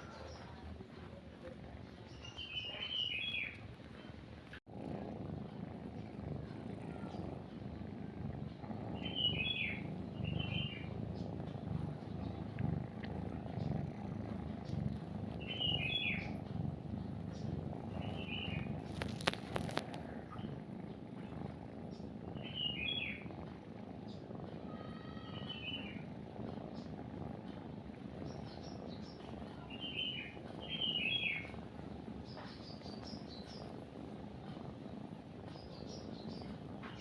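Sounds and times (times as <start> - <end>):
kitten purring: 0.0 - 37.0
bird chirps: 2.1 - 3.5, 9.0 - 10.9, 15.4 - 16.3, 17.4 - 19.1, 22.4 - 23.2, 28.5 - 31.5.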